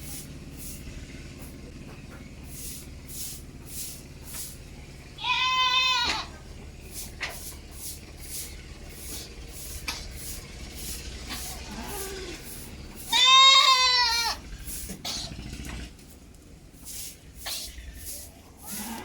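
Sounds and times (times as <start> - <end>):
goat bleating: 5.2 - 6.4, 11.3 - 14.4, 18.6 - 19.0.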